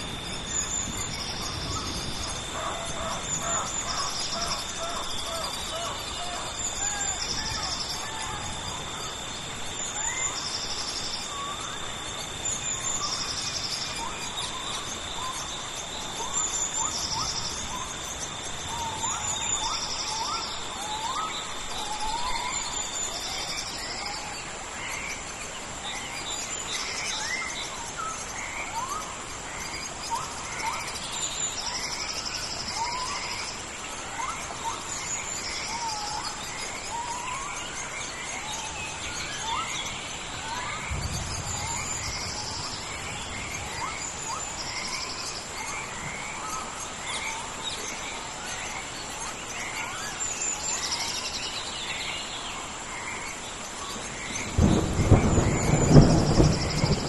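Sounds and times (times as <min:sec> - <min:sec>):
rain hissing: 0:00.0 - 0:20.8, 0:21.4 - 0:57.0
high insect drone: 0:00.0 - 0:57.0
insects droning and chirping: 0:00.0 - 0:57.0
pulsed insect call: 0:00.0 - 0:57.0
birds calling in rising notes: 0:26.1 - 0:57.0.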